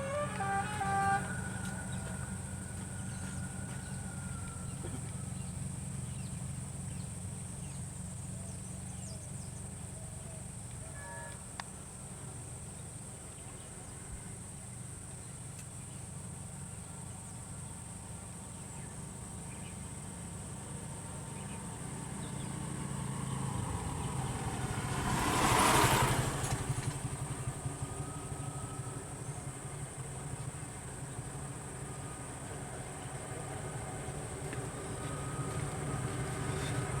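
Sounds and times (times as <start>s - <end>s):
vehicle passing by: 0.0s - 7.7s, 21.2s - 37.0s
vehicle engine idling: 0.0s - 37.0s.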